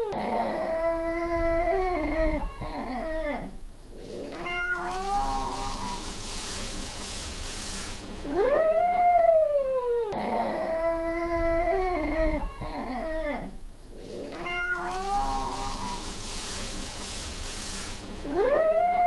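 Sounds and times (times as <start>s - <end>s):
steady hiss: 3.7s - 8.8s, 13.7s - 19.0s
cat caterwauling: 4.3s - 6.1s, 8.3s - 13.3s, 14.3s - 16.1s.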